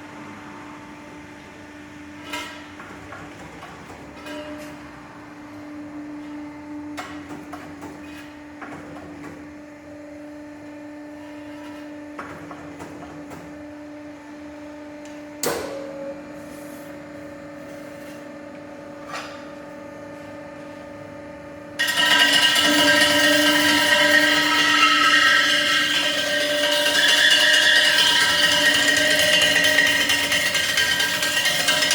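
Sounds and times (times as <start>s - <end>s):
loud power tool running: 21.8s - 31.9s
sharp metallic knocks: 21.8s - 31.9s.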